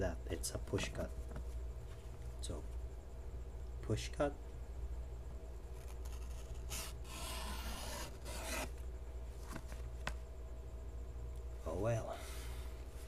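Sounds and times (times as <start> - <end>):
knife cutting paper: 6.0 - 8.8.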